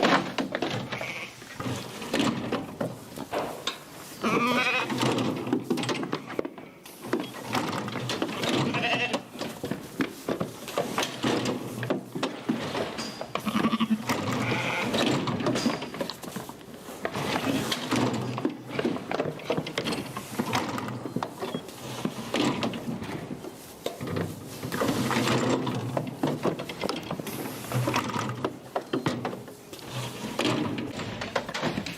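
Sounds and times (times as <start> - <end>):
metal crate gates rattling: 0.0 - 21.1, 22.0 - 31.9
sheep bleating: 4.2 - 4.9, 8.6 - 9.2, 13.4 - 14.9.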